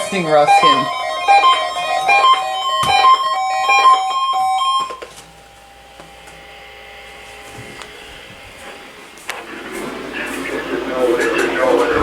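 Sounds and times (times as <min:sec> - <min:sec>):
electronic alert tones: 0:00.0 - 0:05.0
faint steady hum: 0:00.0 - 0:12.0
steady high tone: 0:00.0 - 0:12.0.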